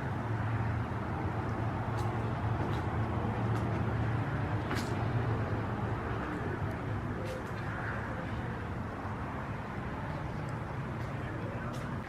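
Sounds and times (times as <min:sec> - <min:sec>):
low outdoor rumble: 0:00.0 - 0:12.0.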